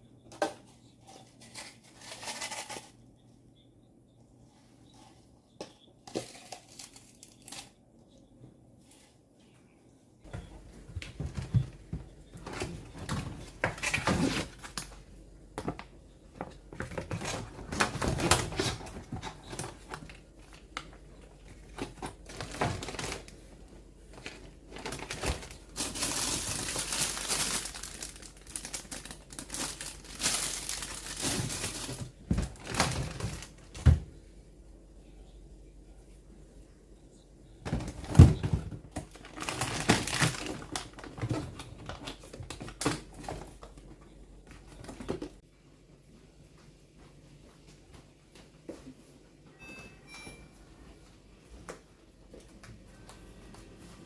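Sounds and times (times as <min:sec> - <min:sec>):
plastic packaging crinkling: 0:01.4 - 0:03.0, 0:06.1 - 0:07.7, 0:21.7 - 0:23.4, 0:24.1 - 0:33.8, 0:37.7 - 0:43.6
items clicking and knocking: 0:10.3 - 0:23.4, 0:24.1 - 0:34.1, 0:37.6 - 0:45.4.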